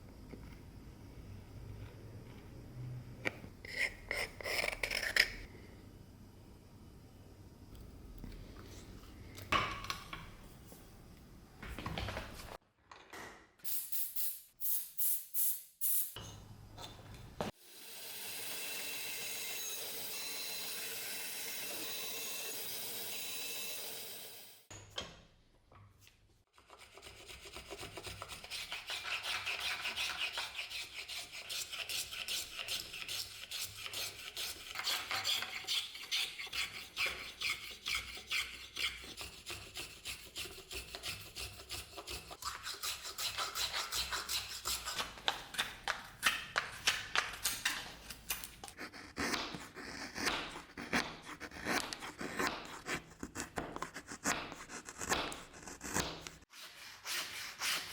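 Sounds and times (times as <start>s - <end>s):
hand file rasping: 26.6s - 45.2s, 48.7s - 57.9s.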